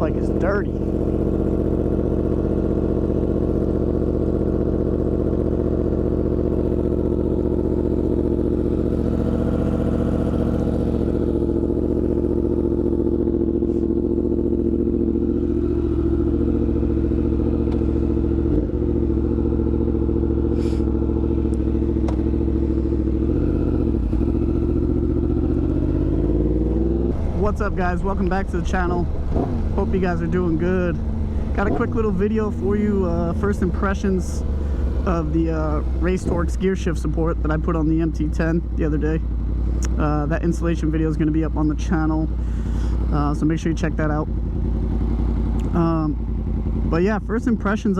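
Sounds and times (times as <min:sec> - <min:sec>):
motorcycle engine running steadily: 0:00.0 - 0:47.9.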